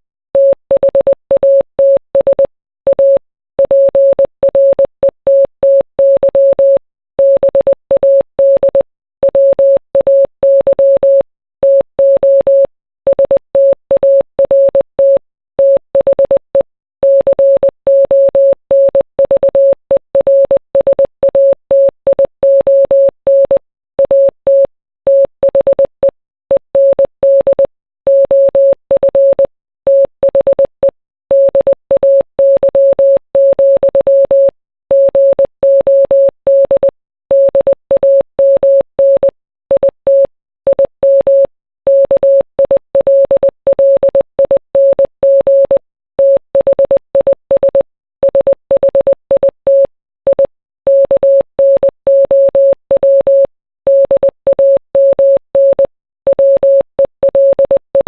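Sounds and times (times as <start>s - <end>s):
morse code beeps: 31.3s - 57.8s.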